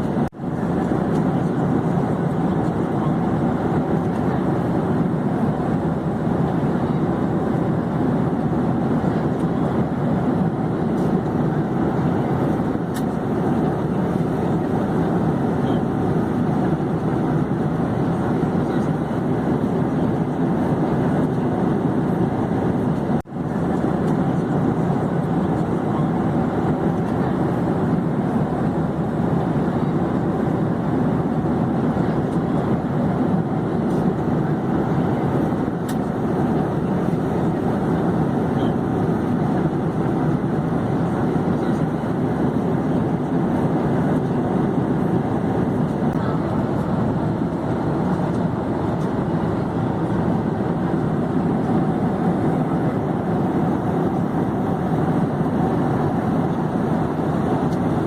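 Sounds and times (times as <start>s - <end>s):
airplane engine and airflow drone: 0.0s - 58.0s.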